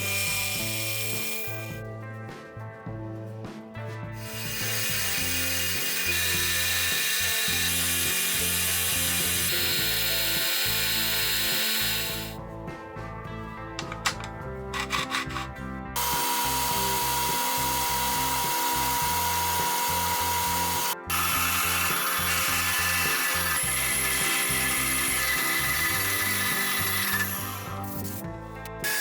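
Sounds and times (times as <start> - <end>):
power tool running: 0.0 - 1.8, 4.2 - 12.4, 13.8 - 29.0
background music: 0.0 - 29.0
clicks: 13.8 - 15.5.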